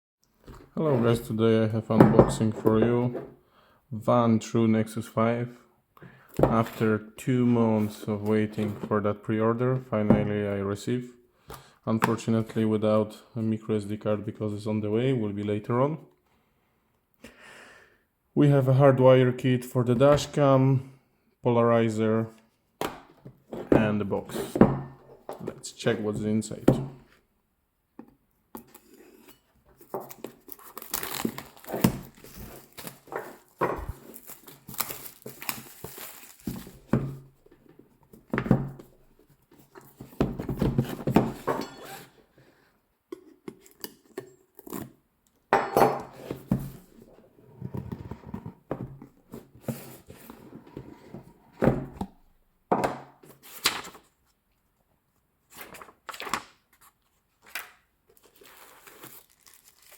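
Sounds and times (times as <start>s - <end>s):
cardboard packaging rustling: 29.1s - 42.2s, 58.1s - 59.9s.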